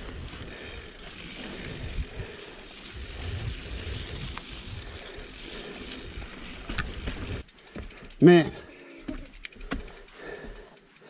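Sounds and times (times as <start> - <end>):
bike tyres on muddy trail: 0.0 - 11.0
wind rumble on microphone: 1.6 - 5.0.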